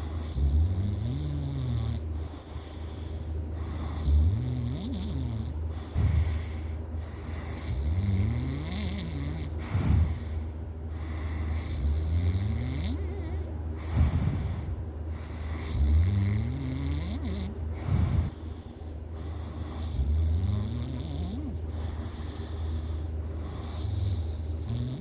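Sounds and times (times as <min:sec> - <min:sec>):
person snoring: 0:00.0 - 0:02.1, 0:03.7 - 0:06.4, 0:07.4 - 0:10.3, 0:11.3 - 0:14.8, 0:15.6 - 0:18.4, 0:19.7 - 0:21.6, 0:23.5 - 0:25.0
puff of breath: 0:05.7 - 0:07.8, 0:09.6 - 0:11.9, 0:13.0 - 0:15.8, 0:17.7 - 0:20.0.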